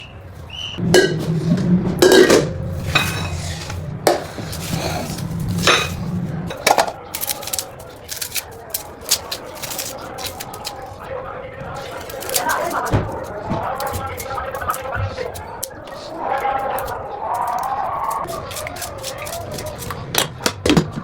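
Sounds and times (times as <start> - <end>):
dishes and cutlery clattering: 0.9 - 10.9.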